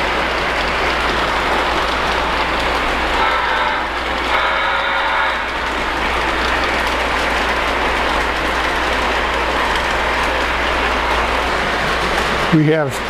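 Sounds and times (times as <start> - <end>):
model train wheels rolling on rail: 0.0 - 13.0
pitched tone from locomotive: 3.2 - 5.6.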